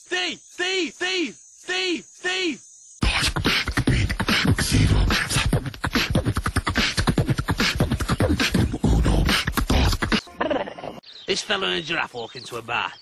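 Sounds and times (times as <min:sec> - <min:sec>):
beatboxing clicks and thumps: 0:03.0 - 0:10.3.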